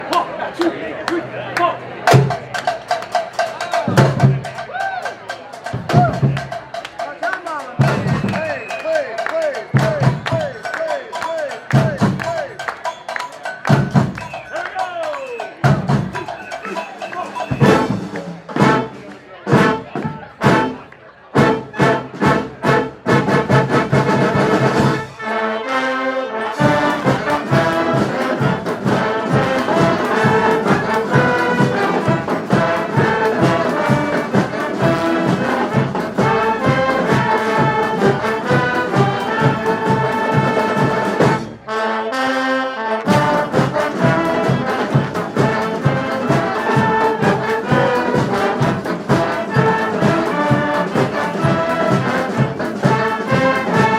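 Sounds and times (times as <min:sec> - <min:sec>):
driving drum beat: 0:02.1 - 0:20.8, 0:21.4 - 0:25.2, 0:26.6 - 0:41.6, 0:43.1 - 0:53.9
brass horns playing melody: 0:15.6 - 0:53.9.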